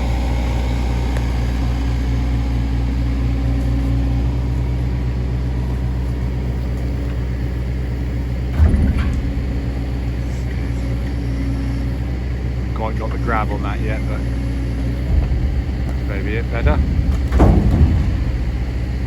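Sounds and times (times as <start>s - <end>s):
diesel engine running: 0.0s - 19.0s
loud knock and clatter: 8.5s - 10.1s, 14.7s - 19.0s.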